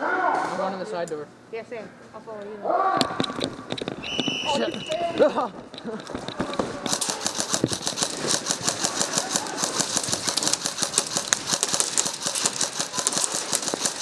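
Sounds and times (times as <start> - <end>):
rapid mechanical clicking: 4.6 - 14.0.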